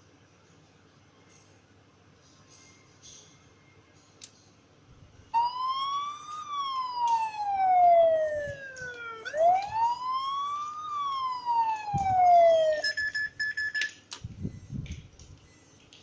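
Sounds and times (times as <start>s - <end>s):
wailing alarm siren: 5.4s - 13.0s.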